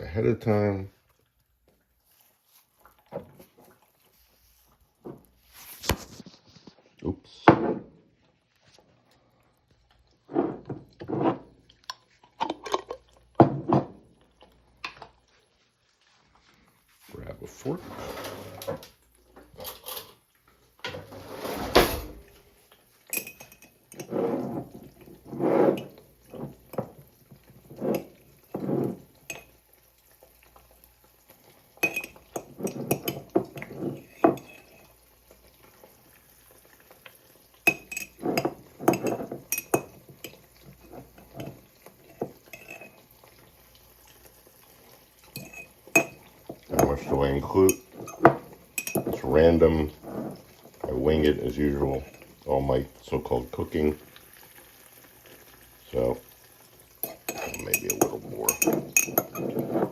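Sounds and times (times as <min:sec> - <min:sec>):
fork scraping glass jar: 0:23.1 - 0:26.8, 0:27.6 - 0:29.5, 0:31.8 - 0:34.9, 0:37.7 - 0:43.0, 0:45.3 - 0:50.9, 0:57.0 - 0:59.9.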